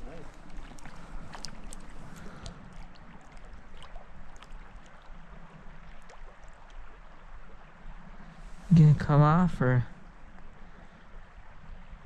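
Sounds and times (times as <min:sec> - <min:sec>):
faint clicks and ticks: 0:00.0 - 0:05.2
creek water rushing: 0:00.0 - 0:12.0.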